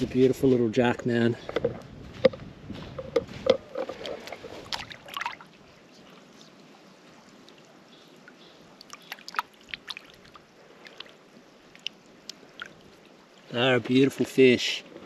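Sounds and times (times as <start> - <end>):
water dripping and splashing: 3.8 - 13.6.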